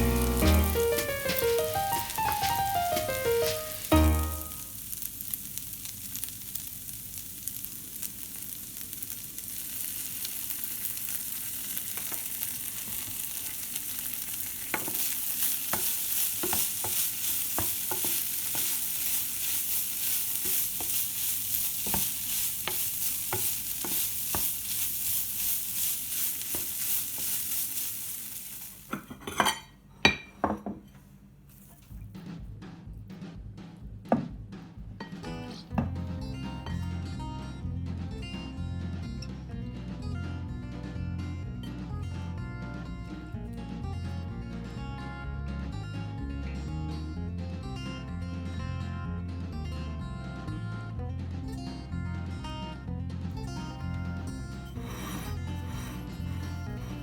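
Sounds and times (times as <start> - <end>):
food sizzling in a frying pan: 0.0 - 29.6, 36.6 - 36.9, 54.7 - 57.0
utensil scraping and tapping pan: 0.2 - 4.5, 14.7 - 24.8, 54.6 - 57.0.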